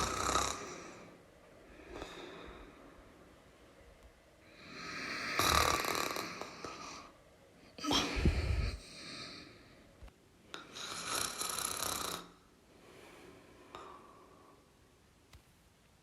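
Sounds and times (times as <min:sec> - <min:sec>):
person snoring: 0:00.0 - 0:01.2, 0:04.5 - 0:07.1, 0:10.7 - 0:12.4.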